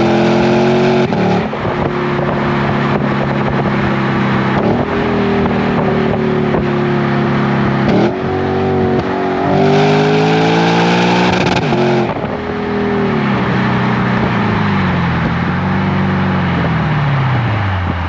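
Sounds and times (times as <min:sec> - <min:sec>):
car engine revving while driving: 0:00.0 - 0:18.0.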